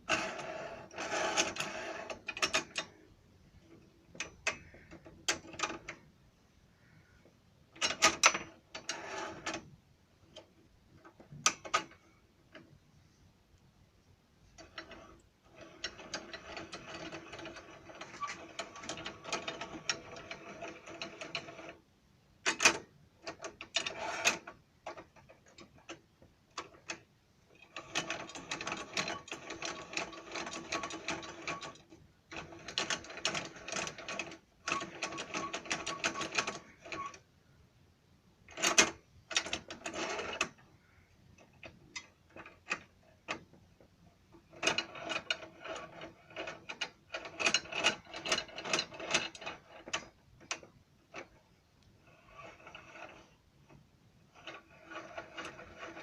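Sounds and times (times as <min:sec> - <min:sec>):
sharp clicks and knocks: 0:00.0 - 0:06.1, 0:07.2 - 0:12.8
rapid metallic clicking of vise: 0:00.0 - 0:06.2, 0:07.7 - 0:12.8, 0:14.4 - 0:37.2, 0:38.4 - 0:40.8, 0:41.4 - 0:56.0.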